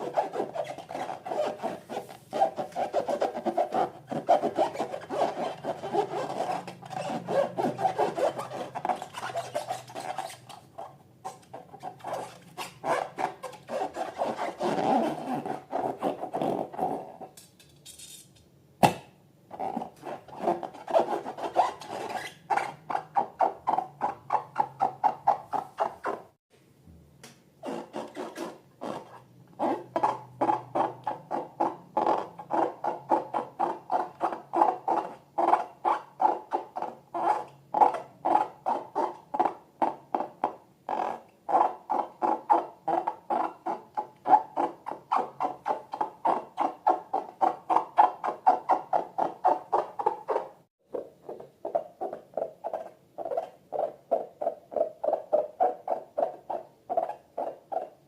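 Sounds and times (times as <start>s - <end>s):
rubber balloon squeaking: 0.0s - 17.4s, 19.5s - 26.4s, 27.6s - 58.0s.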